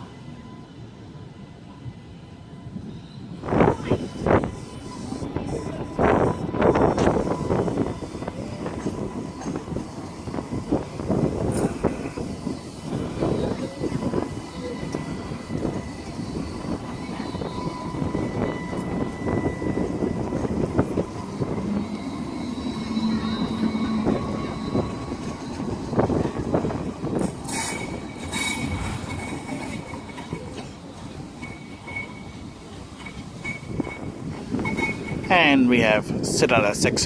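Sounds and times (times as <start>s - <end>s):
tram rumbling: 0.0s - 37.0s
high-pitched wheel squeal: 12.1s - 30.4s.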